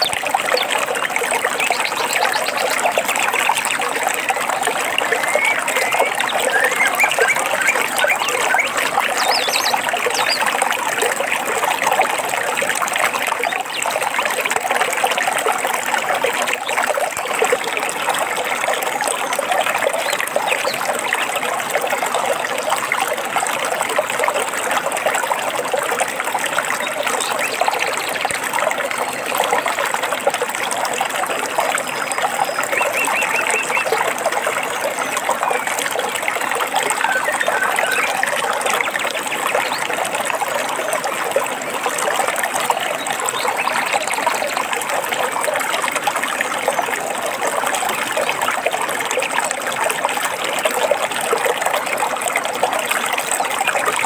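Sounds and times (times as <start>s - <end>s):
stream trickling over stones: 0.0s - 54.0s
bird trilling: 5.1s - 9.8s.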